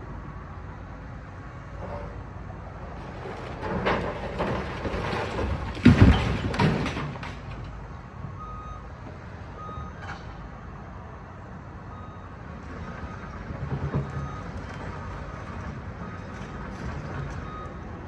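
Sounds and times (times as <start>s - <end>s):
heavy machinery rumble: 0.0s - 11.5s, 12.3s - 18.0s
rubble crashing and scraping: 2.9s - 7.8s
reversing beeps: 8.3s - 10.2s, 11.9s - 12.4s, 13.0s - 18.0s.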